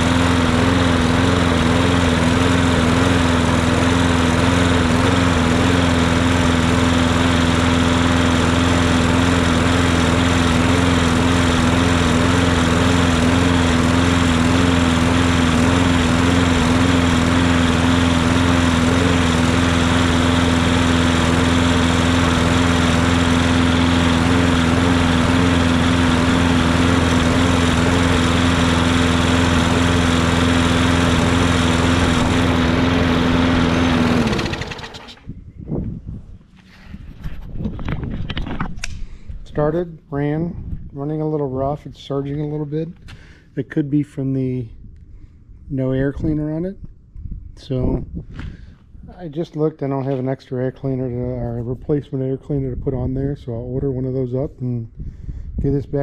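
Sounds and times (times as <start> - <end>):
lawn mower engine running: 0.0 - 35.5.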